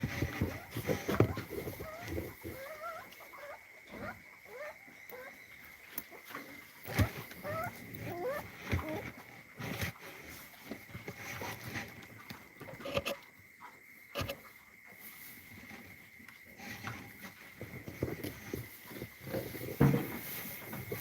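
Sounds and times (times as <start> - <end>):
knocks and rustles: 0.0 - 2.8, 6.3 - 13.1, 16.6 - 21.0
puppy whimpering: 7.4 - 9.0.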